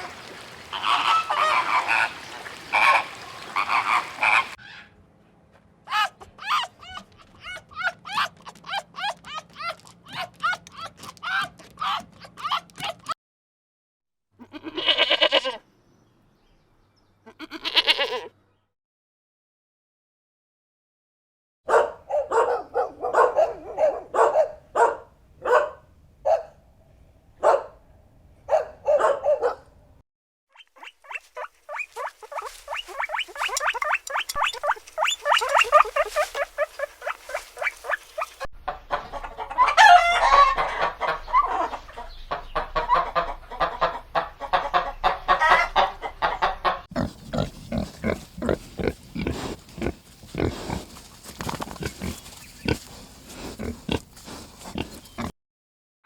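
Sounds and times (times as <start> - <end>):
chickens clucking: 0.0 - 4.6, 30.8 - 55.3
pigs grunting: 0.0 - 4.6, 31.4 - 38.5, 46.9 - 55.3
farmyard animal calls: 0.0 - 5.0, 5.9 - 13.2, 14.4 - 15.7, 17.2 - 18.4, 30.6 - 55.3.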